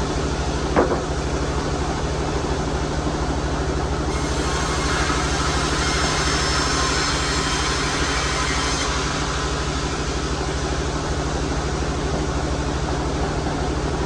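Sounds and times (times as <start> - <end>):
sawmill machinery humming: 4.0 - 14.0
saw cutting through log: 4.1 - 12.2.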